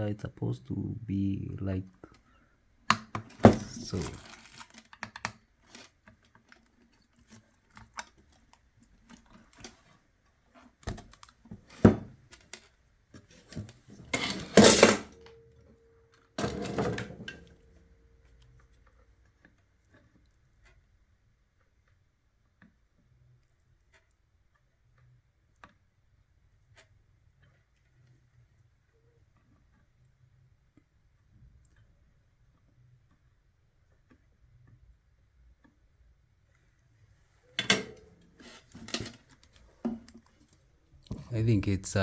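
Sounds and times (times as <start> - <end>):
metal tools clinking on workbench: 3.4 - 4.9, 14.0 - 15.3, 16.4 - 17.5, 37.6 - 39.2
metal clattering: 14.1 - 15.3.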